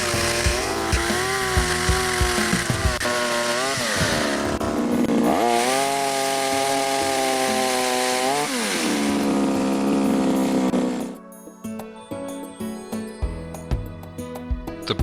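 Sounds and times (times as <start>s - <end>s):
two-stroke engine revving: 0.0s - 11.2s.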